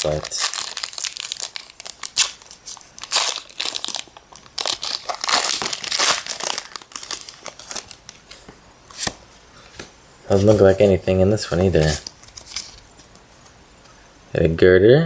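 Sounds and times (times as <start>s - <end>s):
plastic wrapper crinkling and tearing: 0.0s - 9.1s, 11.5s - 13.1s.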